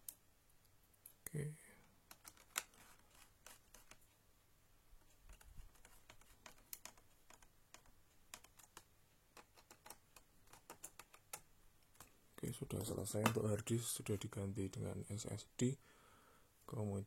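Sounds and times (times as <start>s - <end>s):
clicks and taps on laptop casing: 13.2s - 13.5s.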